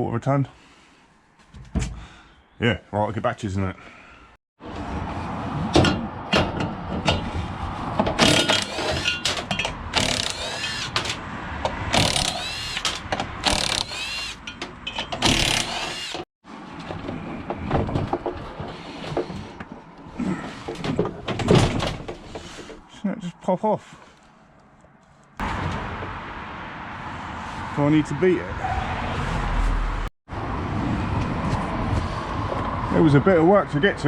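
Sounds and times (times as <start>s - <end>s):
scrap metal clanking: 5.8s - 11.2s
metal scraping on metal: 8.2s - 11.2s.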